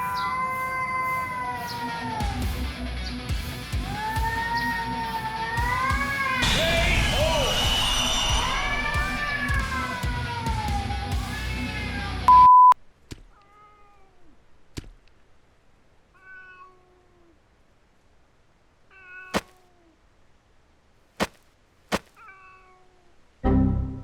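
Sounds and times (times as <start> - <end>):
cat meowing: 0.0 - 2.5, 16.2 - 17.4, 18.9 - 20.0, 22.2 - 23.1
loud beep: 6.4 - 9.9, 12.3 - 12.8.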